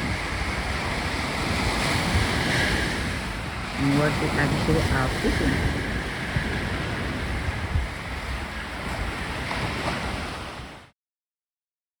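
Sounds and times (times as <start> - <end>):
wind buffeting microphone: 0.0 - 10.8
surf washing onto beach: 0.0 - 10.9.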